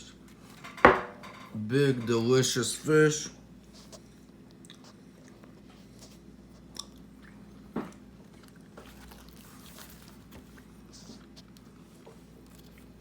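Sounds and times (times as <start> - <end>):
chewing dried fish: 3.6 - 13.0.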